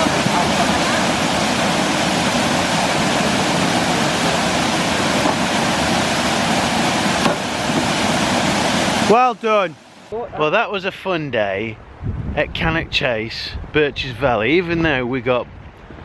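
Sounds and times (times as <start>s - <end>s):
water rushing over waterfall: 0.0s - 10.2s.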